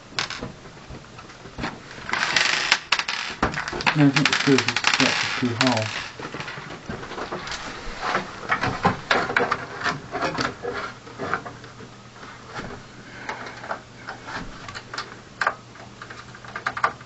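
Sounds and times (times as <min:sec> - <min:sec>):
screws and metal parts rattling: 0:02.0 - 0:06.6.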